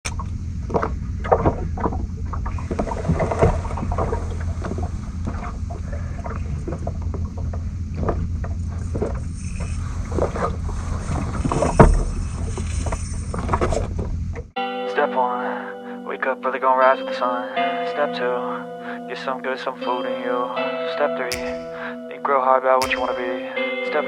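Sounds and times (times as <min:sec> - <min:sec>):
boat engine low rumble: 0:00.1 - 0:14.6
knocks and clicks: 0:21.3 - 0:21.8, 0:22.8 - 0:23.3.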